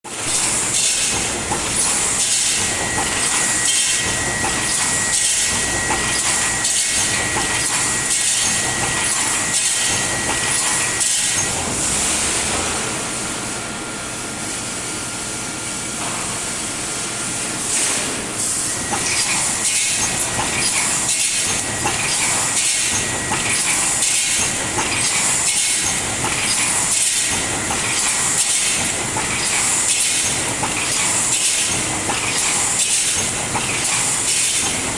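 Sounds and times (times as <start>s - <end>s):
constant machine hiss: 0.1s - 34.9s.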